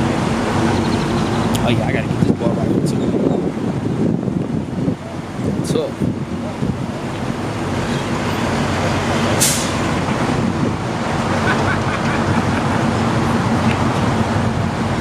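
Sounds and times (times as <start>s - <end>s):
short sharp hiss: 9.4s - 9.8s.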